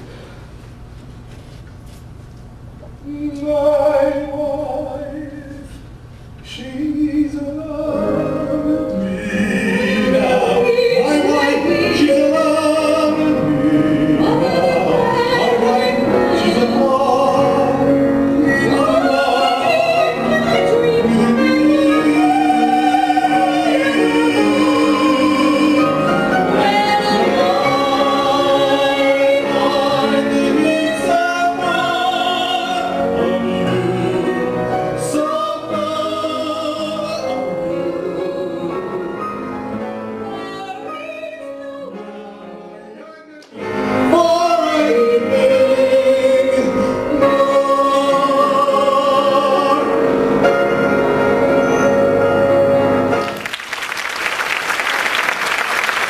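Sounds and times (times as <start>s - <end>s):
operatic show-tune singing: 6.5s - 39.2s, 40.3s - 50.6s
applause: 53.2s - 56.0s.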